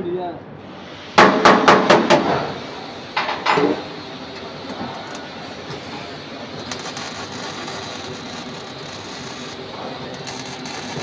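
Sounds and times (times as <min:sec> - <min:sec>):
workshop low hum: 0:00.6 - 0:11.0
hammer blows on metal: 0:00.7 - 0:07.4.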